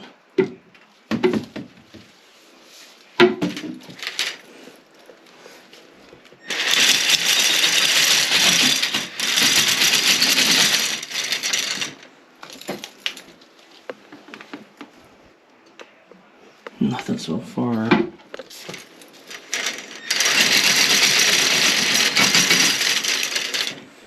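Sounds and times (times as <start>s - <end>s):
metal cable rattling in tube: 6.4s - 13.3s, 18.5s - 23.9s.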